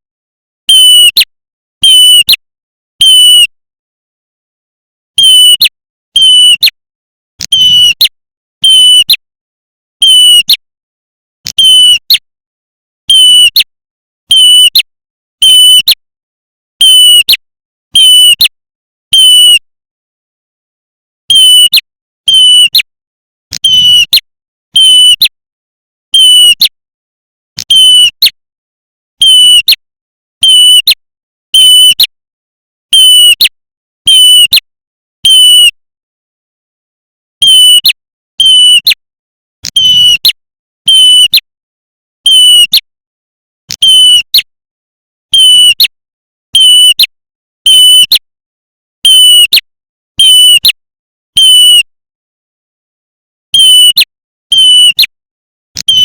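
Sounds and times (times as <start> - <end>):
shrill buzzy bird call: 7.5 - 9.0.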